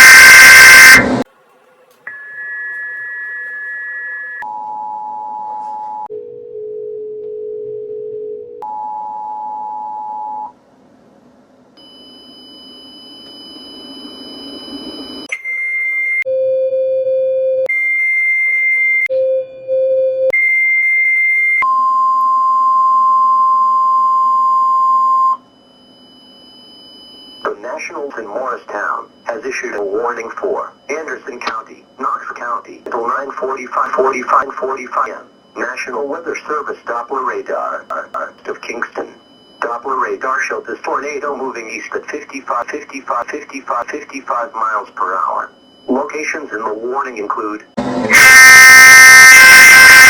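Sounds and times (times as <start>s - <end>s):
two-tone attention signal: 0.0s - 1.2s, 2.1s - 6.1s, 37.2s - 40.2s
alternating high and low beeps: 33.0s - 46.4s.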